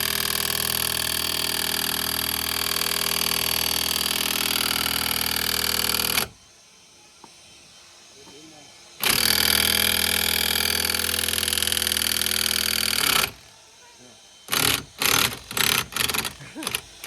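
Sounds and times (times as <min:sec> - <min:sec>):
impact wrench running: 0:00.0 - 0:06.4, 0:09.0 - 0:13.6, 0:14.5 - 0:17.0.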